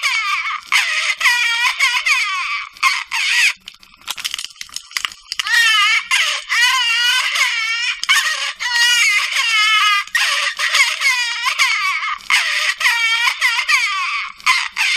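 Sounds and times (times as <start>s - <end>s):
tinny recorded baby cry: 5.4s - 14.9s.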